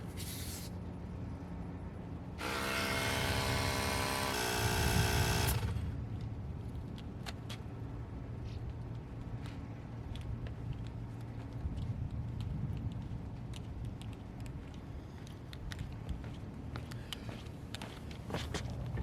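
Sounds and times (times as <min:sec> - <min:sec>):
small air compressor whining: 0:02.4 - 0:06.0.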